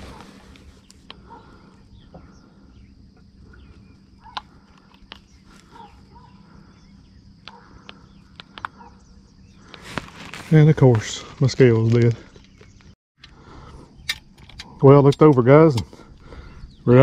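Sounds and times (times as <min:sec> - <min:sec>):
bird chirps: 0:00.0 - 0:10.1
high insect drone: 0:00.0 - 0:12.4.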